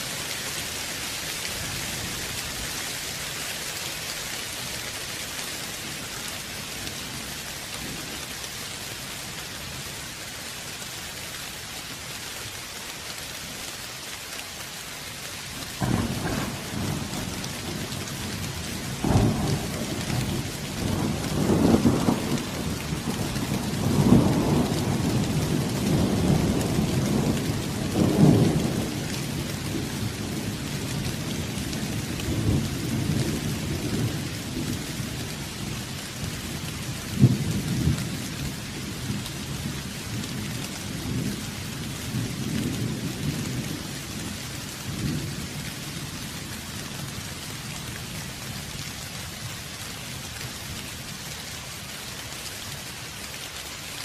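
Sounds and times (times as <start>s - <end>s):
rain hissing: 0.0s - 54.0s
thunder crack and rumble: 15.8s - 31.3s.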